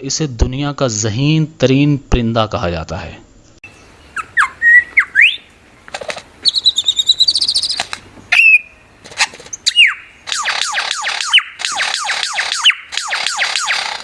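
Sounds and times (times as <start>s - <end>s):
lyrebird whistled calls: 3.7s - 5.5s, 6.4s - 8.8s, 9.5s - 13.9s
fast chattering bird trill: 6.4s - 8.6s, 9.6s - 14.0s.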